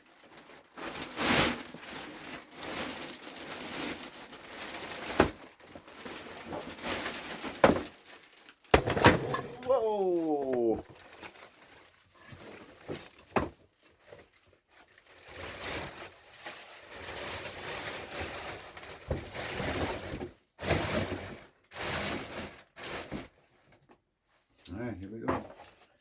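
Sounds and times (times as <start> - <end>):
plastic packaging rustling: 0.0 - 20.1.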